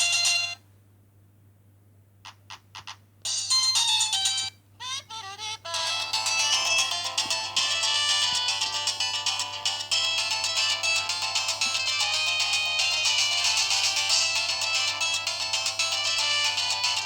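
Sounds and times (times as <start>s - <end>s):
polyphonic ringtone melody: 5.4s - 17.0s.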